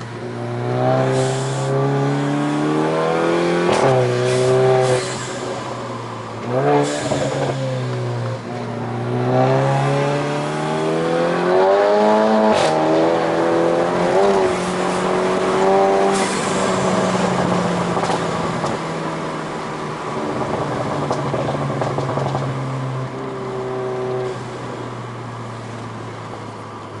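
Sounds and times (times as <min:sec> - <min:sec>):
car engine running hard: 0:00.0 - 0:27.0
exhaust pops and crackles: 0:20.3 - 0:22.5.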